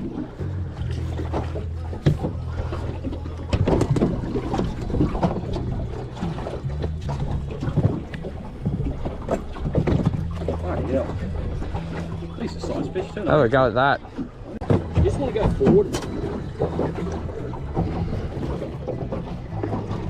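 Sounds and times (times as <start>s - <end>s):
boat motor humming: 0.0s - 20.0s
water lapping: 0.0s - 20.0s
knocks against hull: 1.2s - 2.5s, 3.5s - 11.2s, 14.6s - 20.0s.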